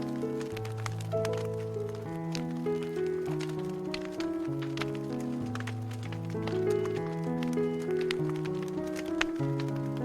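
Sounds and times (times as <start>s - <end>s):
campfire crackling: 0.0s - 10.0s
soft instrumental music: 0.0s - 10.0s.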